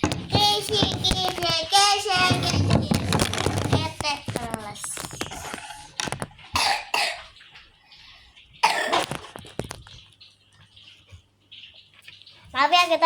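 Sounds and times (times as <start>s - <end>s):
person coughing: 6.5s - 7.3s, 8.6s - 9.1s.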